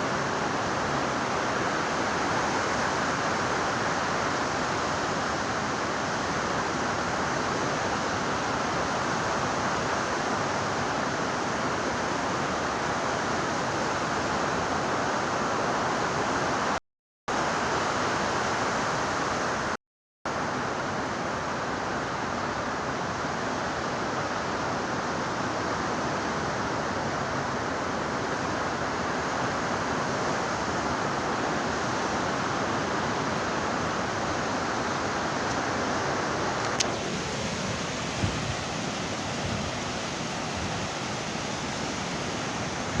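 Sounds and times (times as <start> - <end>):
waves breaking on beach: 20.3 - 43.0
click: 36.6 - 37.0.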